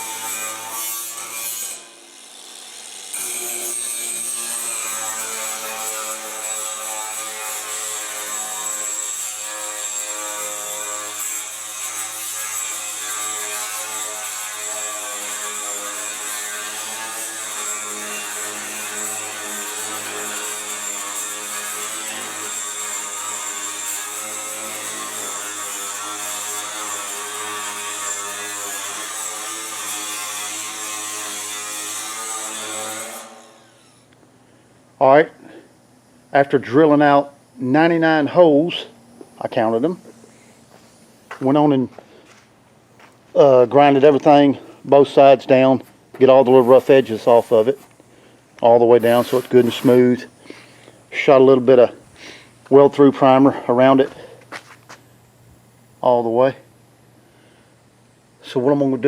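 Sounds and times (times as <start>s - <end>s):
electric drill drilling sheet metal: 0.0s - 34.1s, 46.2s - 48.0s, 48.8s - 50.9s.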